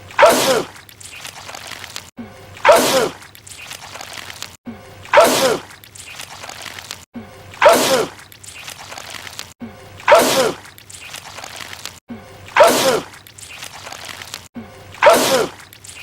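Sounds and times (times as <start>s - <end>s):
man sneezing loudly: 12.6s - 13.1s.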